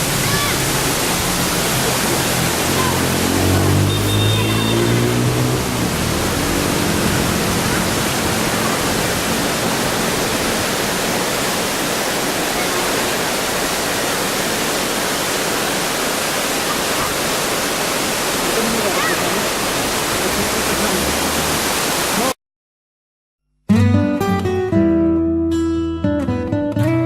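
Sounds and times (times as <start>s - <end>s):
waterfall rushing: 0.0s - 22.4s.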